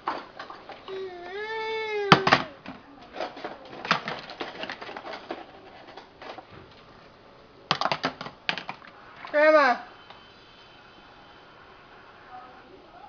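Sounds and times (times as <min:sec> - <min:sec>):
baby vocal sounds: 0:00.8 - 0:02.6.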